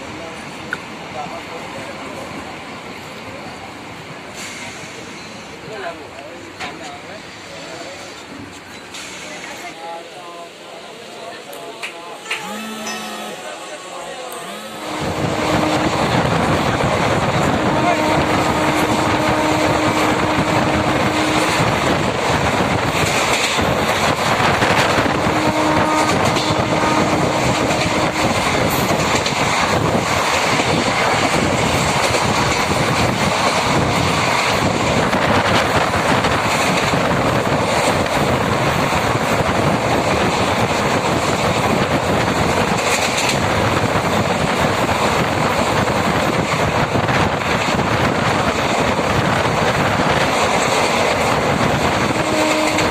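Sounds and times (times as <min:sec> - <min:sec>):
train wheels rumbling on rails: 0:00.0 - 0:12.4, 0:14.6 - 0:52.9
train horn: 0:12.2 - 0:22.1, 0:24.6 - 0:29.1, 0:51.6 - 0:52.9.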